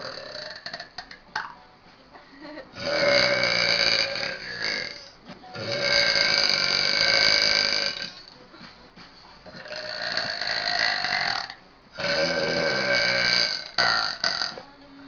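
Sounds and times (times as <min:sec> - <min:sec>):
girl burping: 0:00.0 - 0:01.1, 0:02.8 - 0:08.2, 0:09.6 - 0:14.6.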